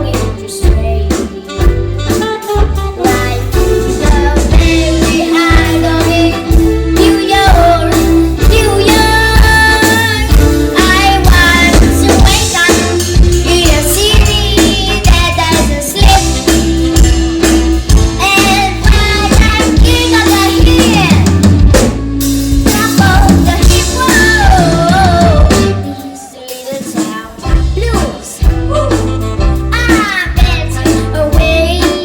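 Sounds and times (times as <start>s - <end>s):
drum kit and bass music: 0.0s - 32.0s
woman singing pop song: 22.7s - 32.0s.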